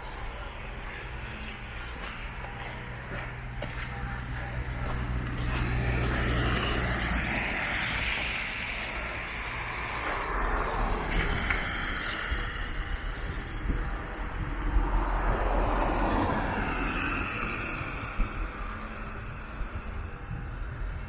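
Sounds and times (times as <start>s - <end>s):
approaching traffic: 0.0s - 21.0s
vehicle driving past: 4.3s - 18.8s.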